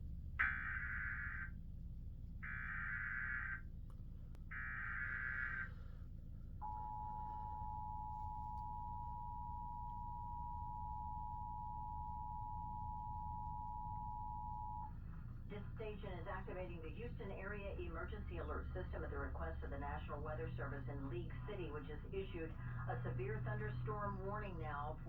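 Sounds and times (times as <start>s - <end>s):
screechy digital data tones: 0.4s - 1.5s, 2.4s - 3.6s.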